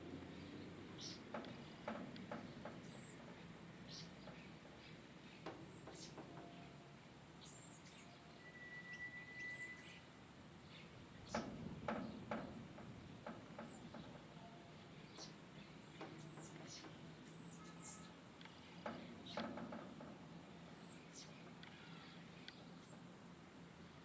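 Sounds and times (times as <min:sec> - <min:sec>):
sharp knocks: 0:11.3 - 0:14.2.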